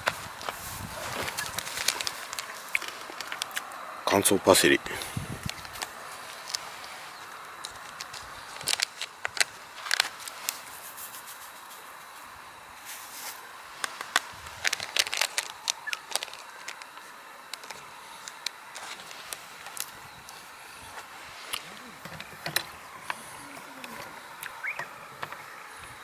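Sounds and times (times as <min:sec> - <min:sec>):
sharp clicks and crackles: 0:00.0 - 0:03.8, 0:05.4 - 0:11.9, 0:13.2 - 0:20.0
faint hiss: 0:00.0 - 0:26.0.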